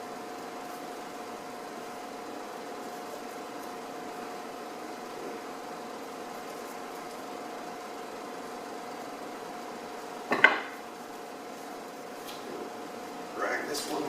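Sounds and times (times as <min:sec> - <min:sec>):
steady background hum: 0:00.0 - 0:14.0
object knocked or set down: 0:10.3 - 0:10.8.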